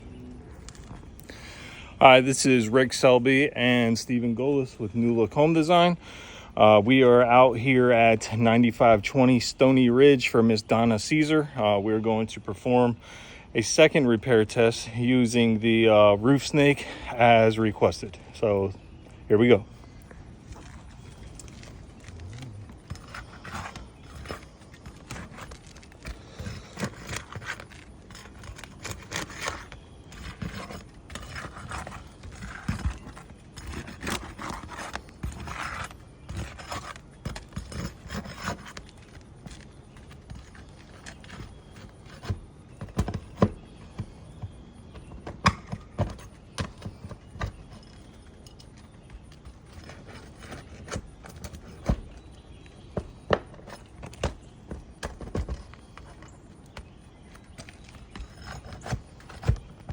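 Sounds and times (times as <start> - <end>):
tool scraping roof shingles: 19.3 - 59.9.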